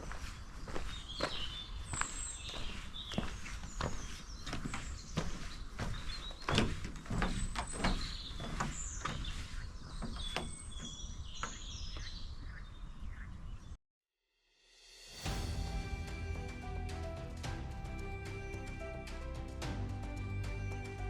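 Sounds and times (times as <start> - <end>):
footsteps on a trail: 0.0 - 12.6
small birds chirping: 0.0 - 13.8.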